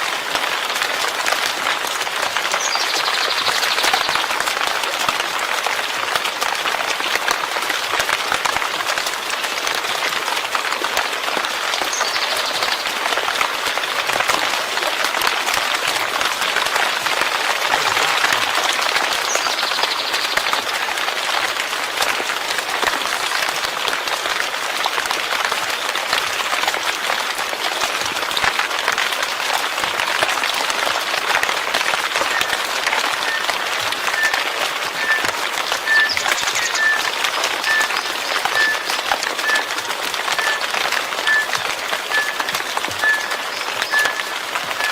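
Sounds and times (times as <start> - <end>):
steady rain falling: 0.0 - 44.9
faint high chirps: 32.3 - 44.9.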